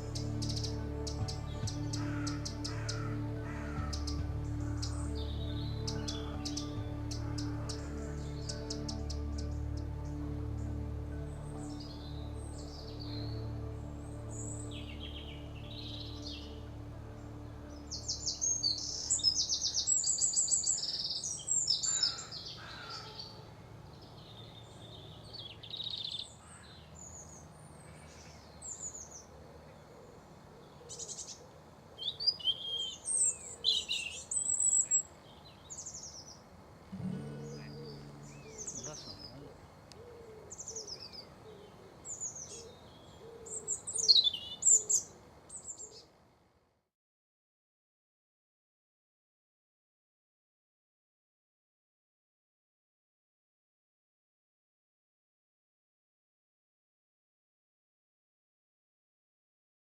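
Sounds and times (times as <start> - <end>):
small birds chirping and trilling: 0.0 - 31.4, 32.0 - 46.1.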